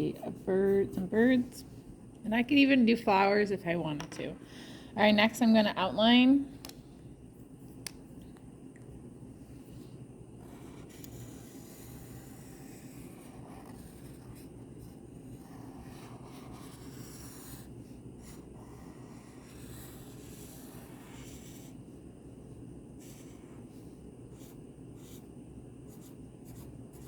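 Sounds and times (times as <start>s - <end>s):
steady low hum: 0.0s - 27.0s
pen scratching on paper: 10.4s - 21.8s, 23.0s - 25.3s, 25.9s - 27.0s.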